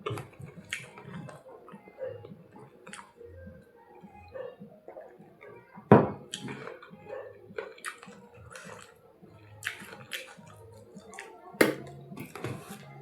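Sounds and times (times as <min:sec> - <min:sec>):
wet eating sounds: 0:00.0 - 0:03.3, 0:06.3 - 0:13.0.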